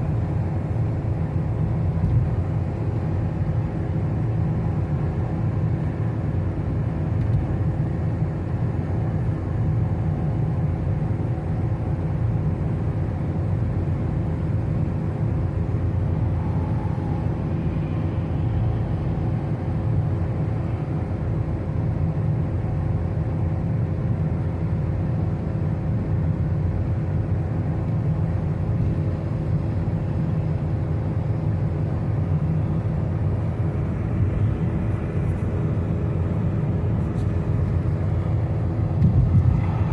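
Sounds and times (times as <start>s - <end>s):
faint steady hum: 0.0s - 39.9s
road and engine rumble: 0.0s - 39.9s.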